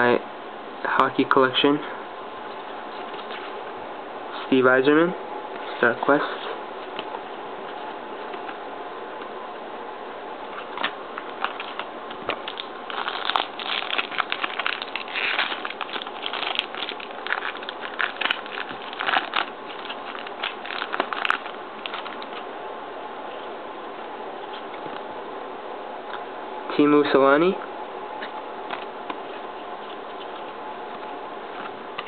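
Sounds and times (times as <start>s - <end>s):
cards rustling and crinkling: 2.5s - 3.6s, 10.5s - 22.5s, 28.2s - 32.0s.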